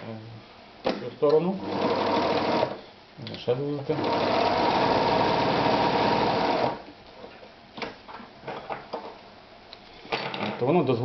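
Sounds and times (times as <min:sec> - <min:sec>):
sewing machine running fast: 0:01.6 - 0:02.8, 0:03.9 - 0:06.8.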